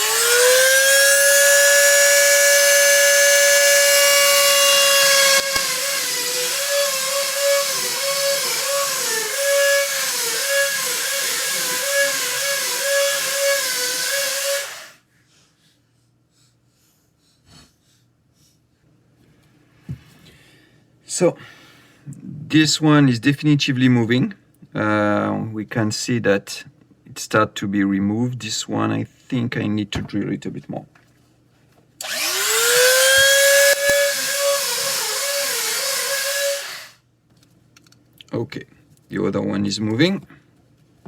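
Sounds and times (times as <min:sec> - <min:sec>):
rotary tool grinding metal: 0:00.0 - 0:15.0, 0:32.0 - 0:37.0.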